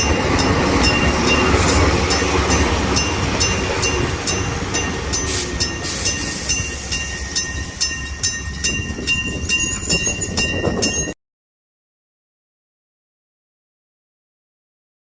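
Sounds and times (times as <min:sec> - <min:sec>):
electric bell crossing signal ringing: 0:00.0 - 0:11.2
train rumbling past: 0:00.0 - 0:11.2.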